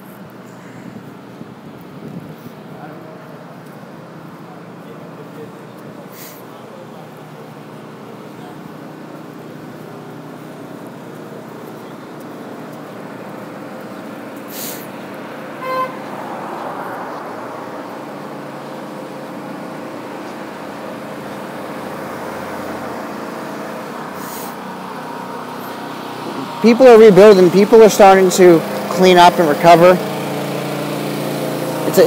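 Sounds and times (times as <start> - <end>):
street traffic: 0.0 - 32.0
car horn toot: 15.6 - 16.1.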